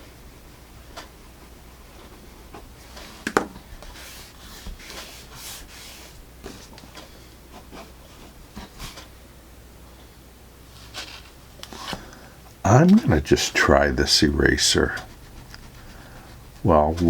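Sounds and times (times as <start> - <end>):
pencil scratching on paper: 13.0 - 17.0.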